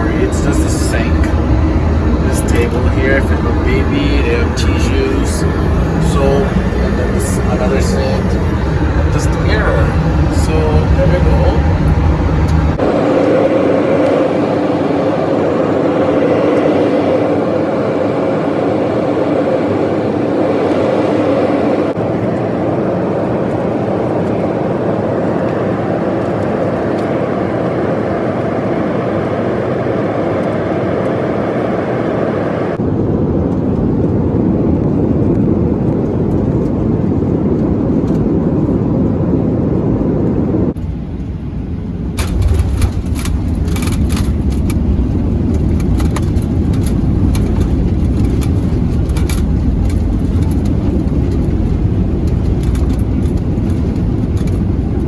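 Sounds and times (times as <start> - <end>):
airplane cabin engine rush: 0.0 - 55.0
faint hum: 0.0 - 55.0.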